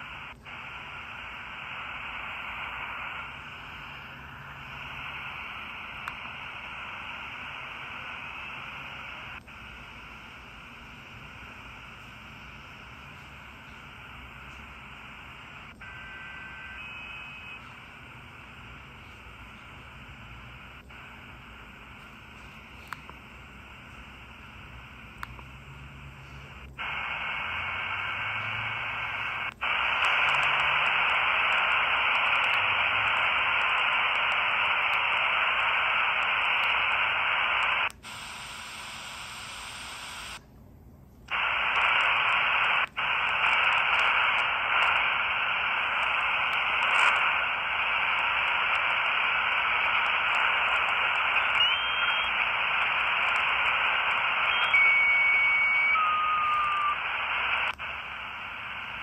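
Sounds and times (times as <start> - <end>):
radio static hiss: 0.0 - 40.5, 41.2 - 59.0
short radio whistles: 15.3 - 19.2, 41.3 - 59.0.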